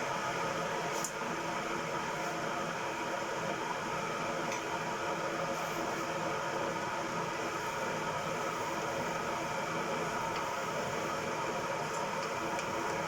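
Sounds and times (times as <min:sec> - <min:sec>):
machine whirring hiss: 0:05.4 - 0:06.3.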